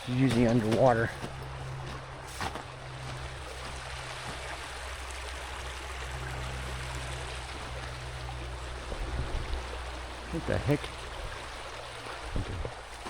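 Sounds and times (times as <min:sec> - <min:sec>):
low rumble: 0:00.0 - 0:10.3
river water rushing: 0:00.0 - 0:13.0.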